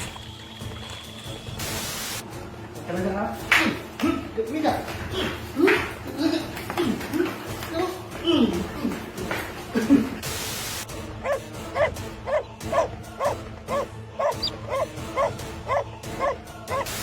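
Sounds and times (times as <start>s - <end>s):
dog barking: 11.2s - 17.0s.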